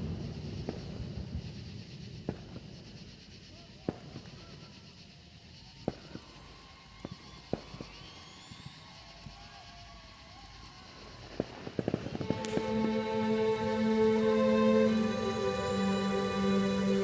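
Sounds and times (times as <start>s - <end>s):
music: 12.2s - 17.0s.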